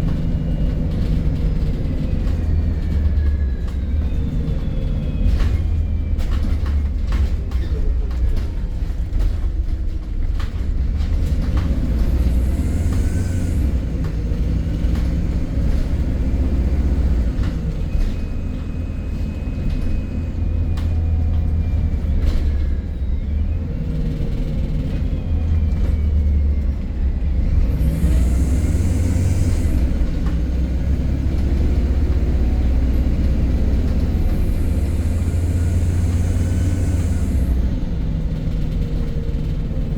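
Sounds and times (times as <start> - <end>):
bus engine rumble: 0.0 - 39.9.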